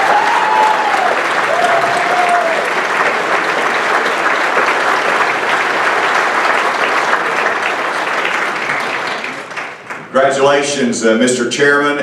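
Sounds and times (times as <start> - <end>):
people applauding: 0.0 - 10.3.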